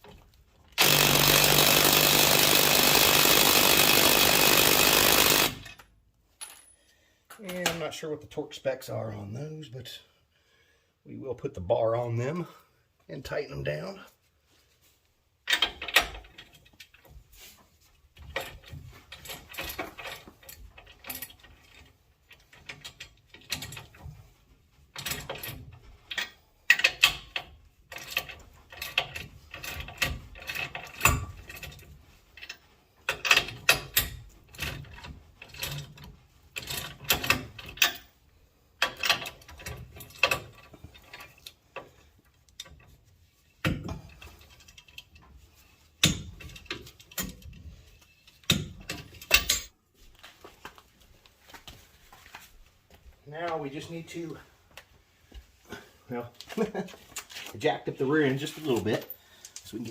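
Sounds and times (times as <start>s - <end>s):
ratchet wrench clicking: 0.8s - 5.8s.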